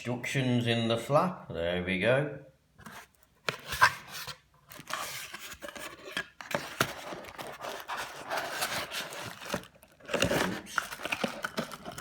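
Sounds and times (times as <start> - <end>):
cardboard box rustling and scraping: 2.8 - 12.0.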